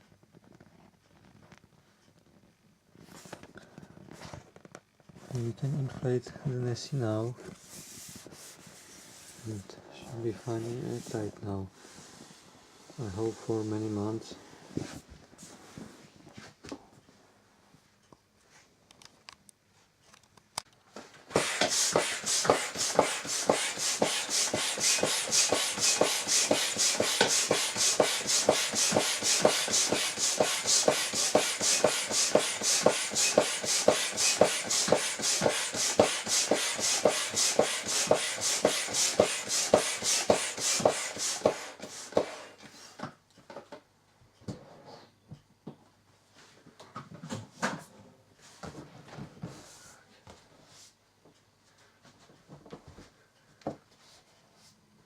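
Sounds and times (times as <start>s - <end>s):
manual air pump strokes: 21.3s - 42.9s.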